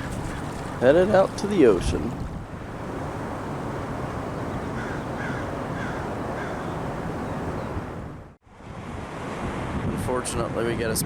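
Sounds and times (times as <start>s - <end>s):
bird calling: 0.0s - 2.0s, 2.6s - 8.1s
ocean surf: 0.0s - 10.6s
wind on microphone: 0.0s - 11.0s.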